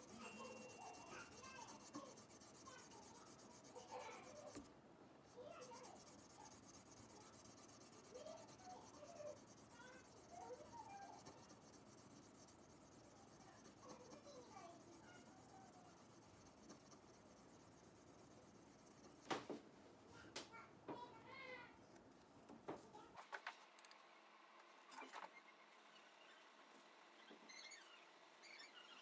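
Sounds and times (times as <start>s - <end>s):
hand rubbing on metal: 0.0s - 4.7s, 5.5s - 19.3s.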